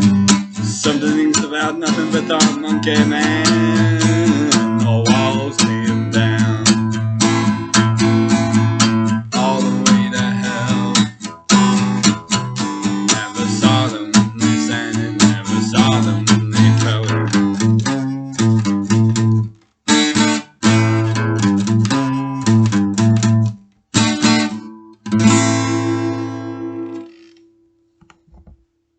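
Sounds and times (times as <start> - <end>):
strummed guitar: 0.0 - 27.5
bass line: 2.1 - 11.0, 13.0 - 19.4.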